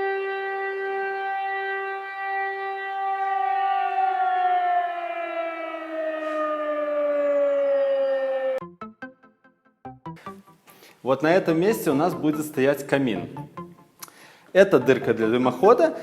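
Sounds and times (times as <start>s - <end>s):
siren-like tone sliding lower: 0.0s - 8.6s.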